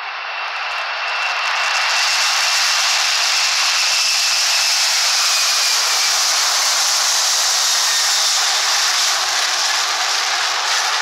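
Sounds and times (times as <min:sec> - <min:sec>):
jet engines rushing: 0:00.2 - 0:11.0.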